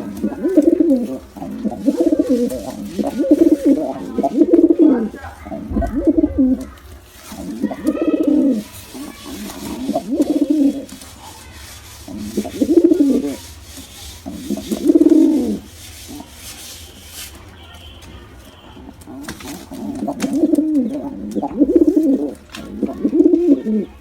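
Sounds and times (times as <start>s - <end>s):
pigeons cooing: 0.0s - 16.3s, 18.8s - 24.0s.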